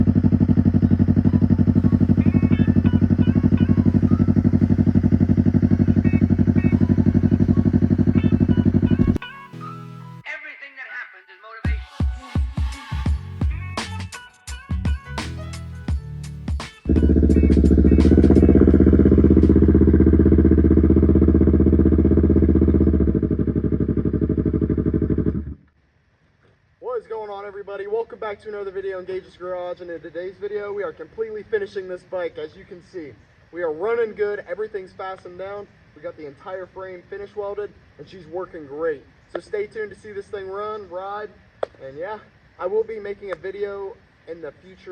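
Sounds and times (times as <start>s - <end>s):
motorbike engine running: 0.0s - 9.2s, 16.8s - 25.6s.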